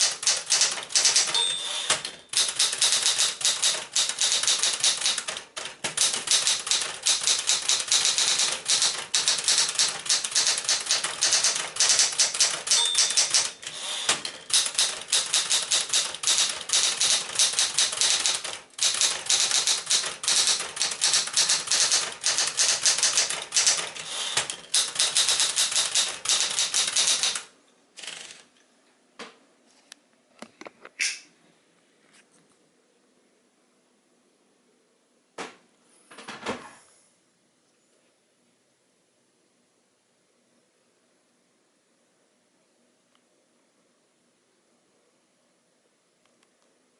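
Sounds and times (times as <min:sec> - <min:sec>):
manual typewriter typing: 0:00.0 - 0:28.5.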